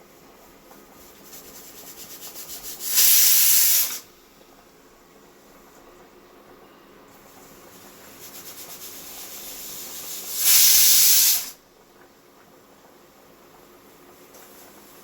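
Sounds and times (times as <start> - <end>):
pressure cooker whistle: 2.8 - 4.1, 8.8 - 11.6.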